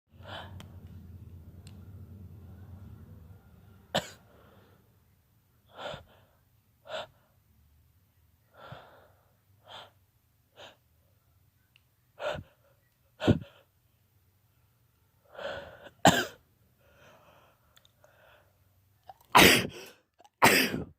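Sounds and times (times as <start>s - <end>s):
man stifling sneezes: 19.3s - 20.9s.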